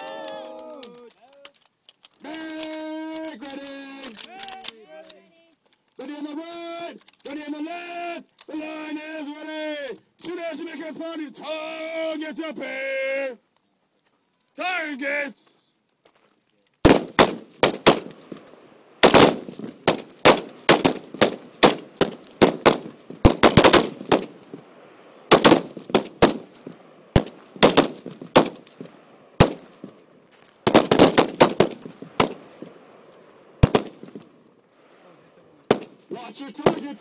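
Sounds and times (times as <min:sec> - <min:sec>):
gunshots with echoes: 0:19.0 - 0:24.3, 0:25.3 - 0:26.5, 0:27.2 - 0:28.6, 0:29.4 - 0:29.6, 0:30.7 - 0:32.4, 0:33.6 - 0:34.2.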